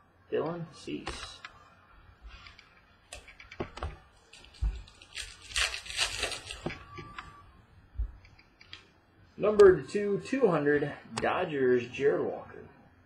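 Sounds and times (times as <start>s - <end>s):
packaging rustle: 4.2s - 7.0s.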